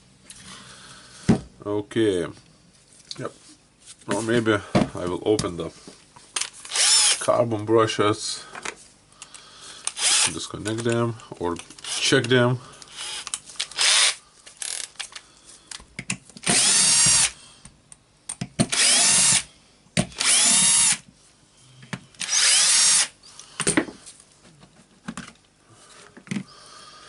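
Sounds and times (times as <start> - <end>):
cordless drill whirring: 6.7 - 7.2, 9.8 - 10.3, 11.8 - 12.1, 12.9 - 14.9, 16.4 - 17.4, 18.7 - 19.5, 20.1 - 21.0, 22.2 - 23.2.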